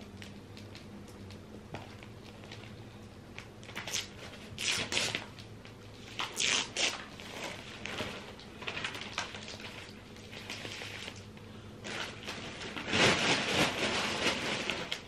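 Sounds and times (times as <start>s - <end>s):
faint steady hum: 0.0s - 15.0s
paper rustling and handling: 11.8s - 15.0s.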